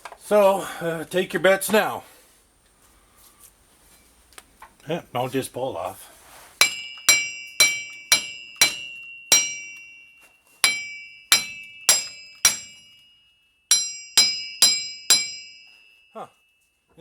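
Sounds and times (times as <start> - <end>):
hammer striking metal: 6.6 - 16.2.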